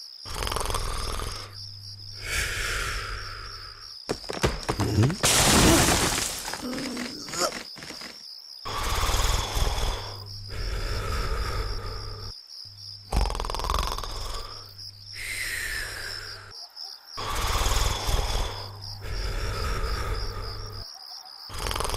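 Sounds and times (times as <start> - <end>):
cartoon snoring with whistle: 0.3 - 1.6, 8.7 - 12.3, 13.1 - 16.5, 17.2 - 20.9, 21.5 - 21.9.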